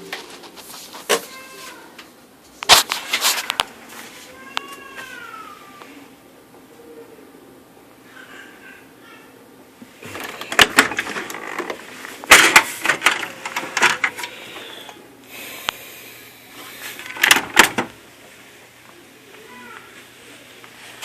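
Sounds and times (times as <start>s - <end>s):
printer clattering: 10.1s - 14.4s, 17.0s - 17.9s.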